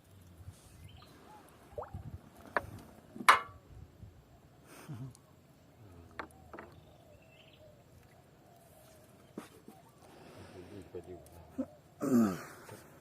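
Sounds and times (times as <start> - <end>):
bird chirping: 0.7 - 2.1, 6.3 - 11.8.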